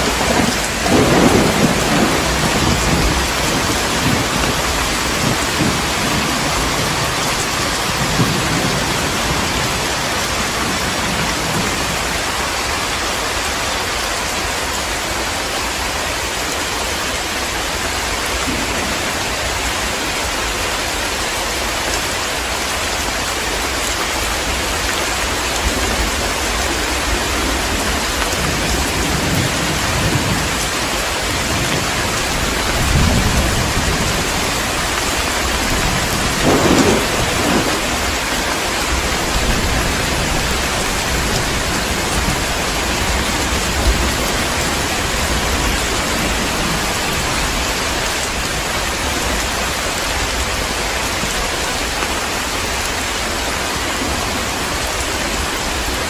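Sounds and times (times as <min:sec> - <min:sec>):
thunder rumbling: 0:00.0 - 0:12.8, 0:18.0 - 0:20.6, 0:24.2 - 0:56.0
heavy rain: 0:00.0 - 0:56.0.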